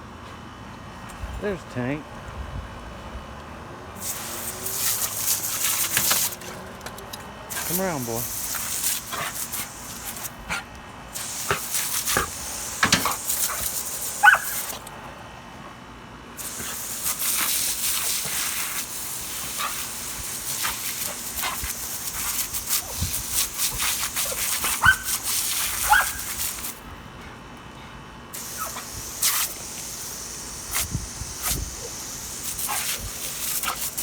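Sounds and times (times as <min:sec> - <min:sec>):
garden hose spray hissing: 0:04.0 - 0:06.5, 0:07.5 - 0:14.9, 0:16.4 - 0:26.9, 0:28.4 - 0:34.0
dog barking: 0:14.2 - 0:14.7, 0:24.2 - 0:25.2, 0:25.8 - 0:26.3.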